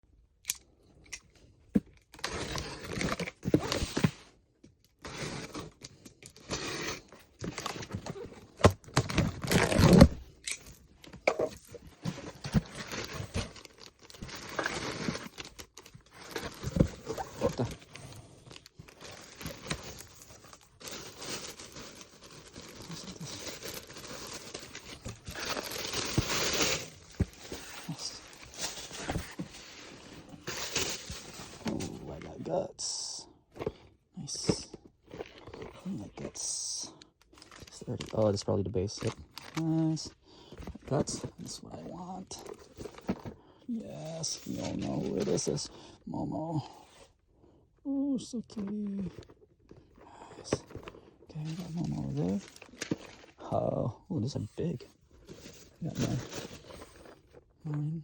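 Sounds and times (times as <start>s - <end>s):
packaging tearing and crinkling: 5.0s - 10.8s, 11.6s - 29.4s, 37.4s - 40.0s, 51.4s - 53.4s.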